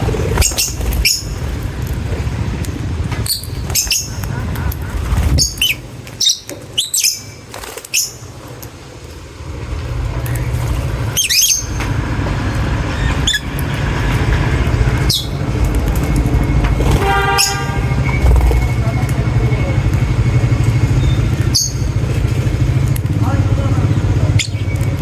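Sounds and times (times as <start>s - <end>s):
bird squawk: 0.0s - 1.4s, 3.3s - 7.4s, 11.1s - 11.8s, 17.0s - 18.8s
lovebirds chirping: 0.1s - 1.5s, 3.2s - 8.4s, 11.1s - 11.9s, 21.0s - 22.0s
low rumble: 13.8s - 21.4s.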